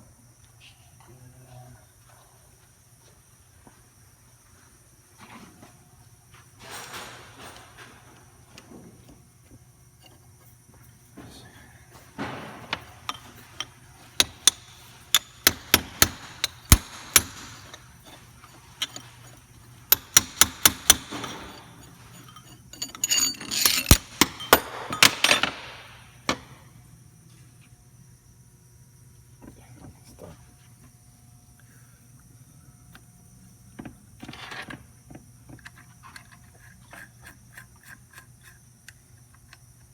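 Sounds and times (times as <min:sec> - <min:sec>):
scraping and knocking: 0:12.2 - 0:25.8
hammer striking metal: 0:14.2 - 0:18.2, 0:19.9 - 0:26.4.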